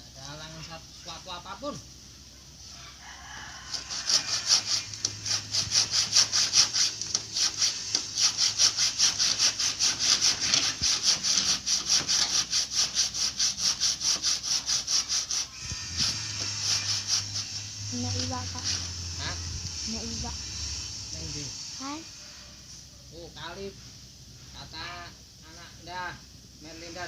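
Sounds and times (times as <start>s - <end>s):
handsaw cutting bamboo: 3.7s - 22.5s.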